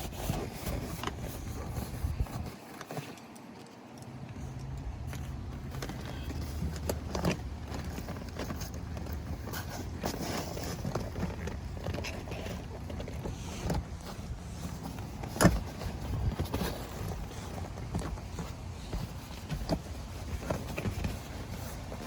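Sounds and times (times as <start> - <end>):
light clicks and rustles: 0.0 - 22.0
car floor mat handling: 5.8 - 22.0.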